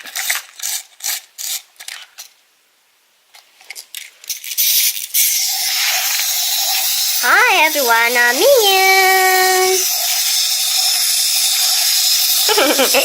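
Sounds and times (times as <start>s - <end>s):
steady hiss: 2.6s - 13.0s.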